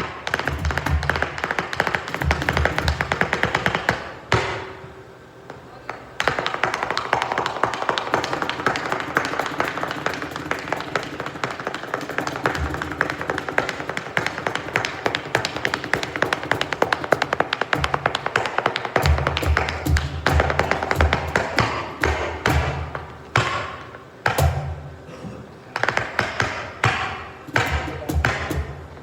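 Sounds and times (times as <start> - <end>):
flamenco shoes striking stage: 0.0 - 29.0.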